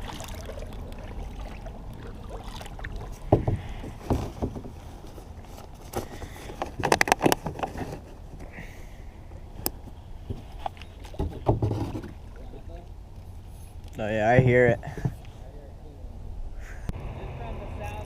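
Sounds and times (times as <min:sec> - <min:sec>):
paddle splashing in water: 0:00.0 - 0:04.8
paddle knocking against hull: 0:02.5 - 0:04.8, 0:11.1 - 0:12.3.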